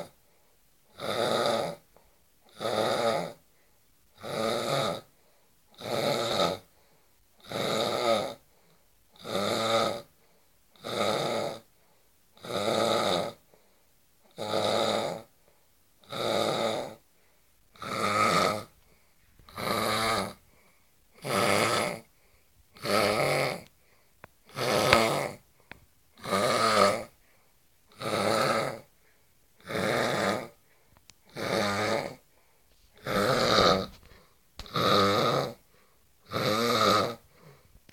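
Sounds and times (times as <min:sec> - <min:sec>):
man snoring loudly: 0:00.9 - 0:01.8, 0:02.5 - 0:03.4, 0:04.2 - 0:05.1, 0:05.8 - 0:06.7, 0:07.4 - 0:08.4, 0:09.2 - 0:10.1, 0:10.8 - 0:11.7, 0:12.4 - 0:13.4, 0:14.3 - 0:15.3, 0:16.0 - 0:17.0, 0:17.8 - 0:18.7, 0:19.5 - 0:20.4, 0:21.2 - 0:22.1, 0:22.8 - 0:23.7, 0:24.5 - 0:25.4, 0:26.2 - 0:27.1, 0:27.9 - 0:28.9, 0:29.6 - 0:30.6, 0:31.3 - 0:32.2, 0:33.0 - 0:34.0, 0:34.6 - 0:35.6, 0:36.2 - 0:37.2.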